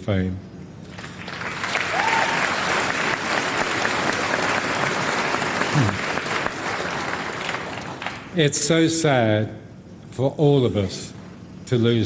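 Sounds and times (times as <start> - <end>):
audience applauding: 0.9 - 8.3.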